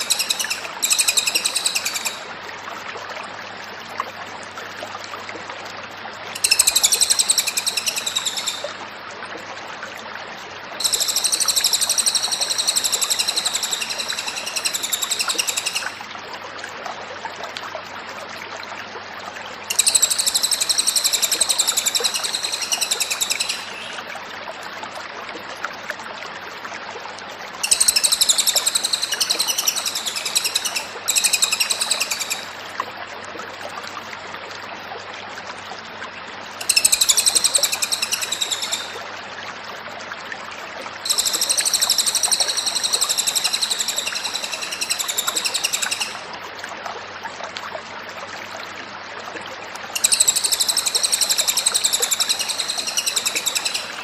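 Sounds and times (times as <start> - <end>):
bird chirping fast and high: 0.0 - 2.2, 6.4 - 8.6, 10.8 - 16.0, 19.7 - 24.0, 27.6 - 32.6, 36.6 - 39.0, 41.1 - 46.2, 50.0 - 54.0.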